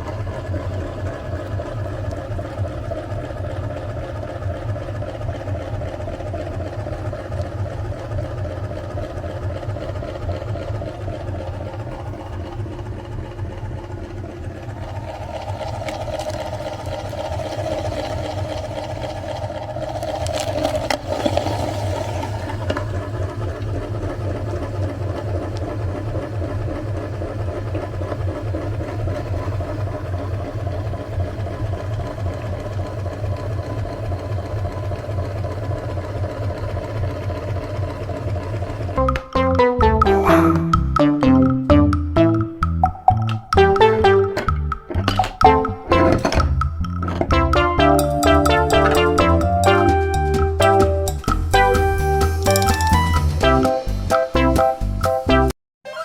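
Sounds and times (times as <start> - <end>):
electric meat grinder motor: 14.2 - 39.0.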